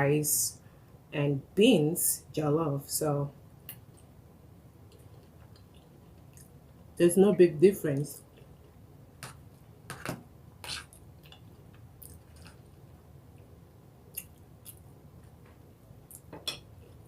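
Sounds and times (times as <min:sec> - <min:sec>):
person chewing food: 0:04.9 - 0:06.6, 0:10.6 - 0:13.5, 0:14.1 - 0:17.0.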